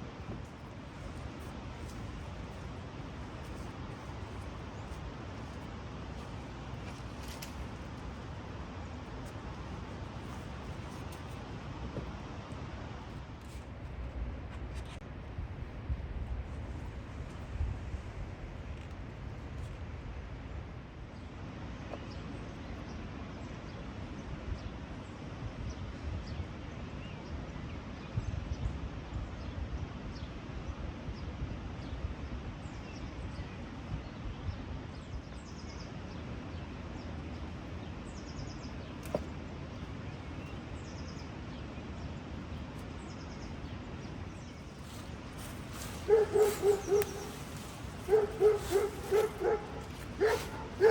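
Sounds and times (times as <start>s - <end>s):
steady low rumbling noise: 0.0s - 21.2s, 32.0s - 50.9s
small birds chirping: 37.7s - 50.9s.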